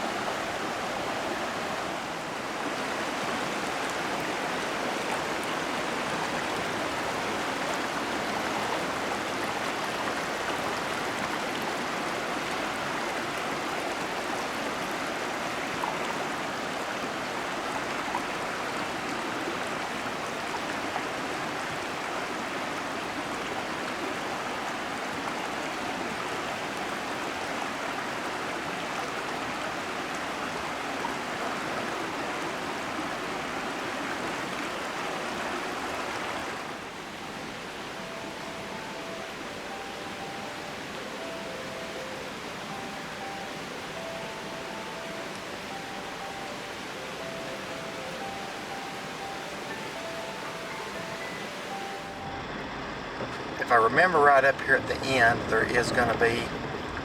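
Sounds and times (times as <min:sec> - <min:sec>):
river water rushing: 0:00.0 - 0:57.0.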